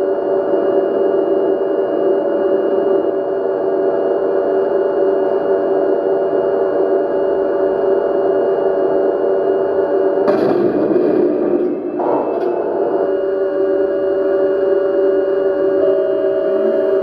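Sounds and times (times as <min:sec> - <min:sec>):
loud harsh electronic noise: 0:10.2 - 0:17.0.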